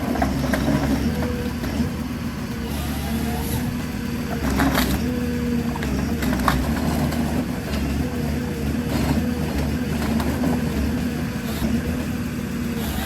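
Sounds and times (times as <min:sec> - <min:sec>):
heavy machine engine running: 0:00.0 - 0:13.0.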